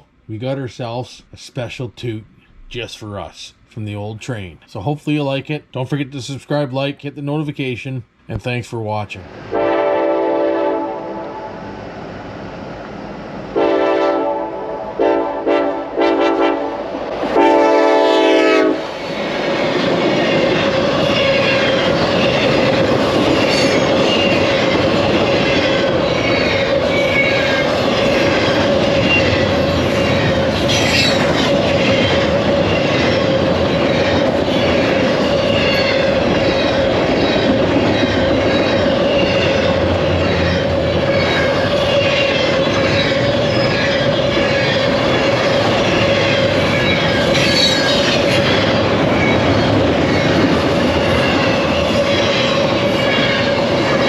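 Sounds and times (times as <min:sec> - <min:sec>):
train rumble: 0:00.0 - 0:54.0
train horn blasts: 0:09.5 - 0:11.7, 0:13.5 - 0:18.9
train wheels clacking over rails: 0:17.0 - 0:54.0.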